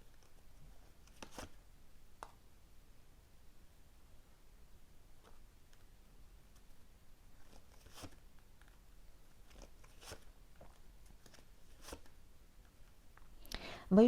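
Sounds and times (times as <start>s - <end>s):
cards being shuffled: 0.2s - 1.6s, 7.4s - 8.8s, 9.4s - 12.2s.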